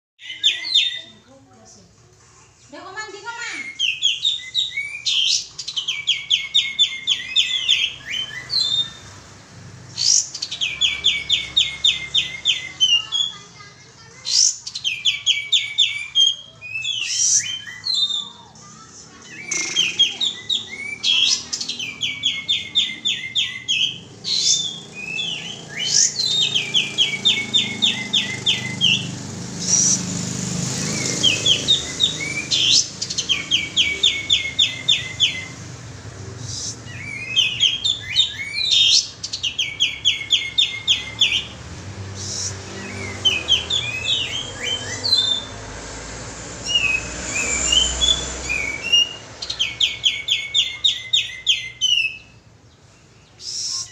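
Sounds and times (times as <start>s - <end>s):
bird song trills: 0.2s - 1.4s, 3.1s - 53.9s.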